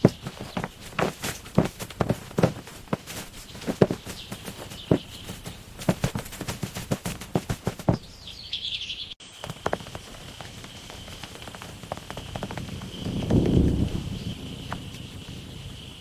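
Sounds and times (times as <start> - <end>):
bird chirping: 3.3 - 6.3, 7.8 - 11.4.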